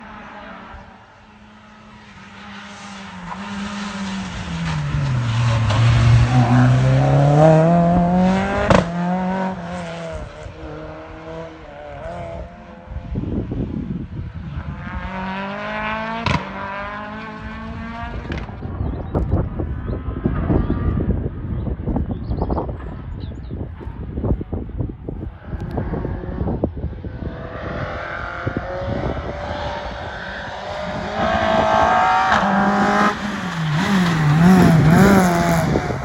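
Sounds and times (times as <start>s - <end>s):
rally car engine revving: 0.0s - 13.6s, 14.6s - 18.6s, 25.4s - 36.0s
exhaust crack: 30.9s - 36.0s.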